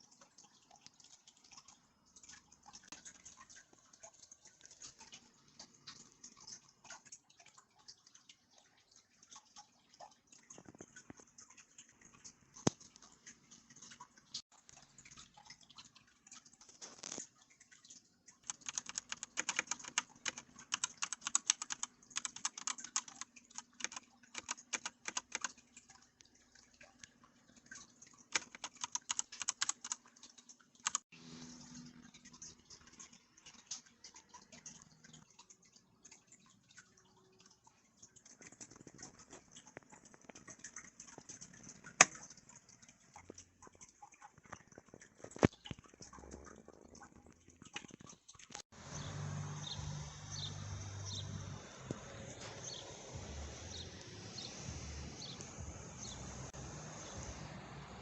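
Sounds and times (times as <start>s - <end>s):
typing on mechanical keyboard: 18.4s - 25.6s, 28.3s - 30.1s, 30.8s - 31.1s.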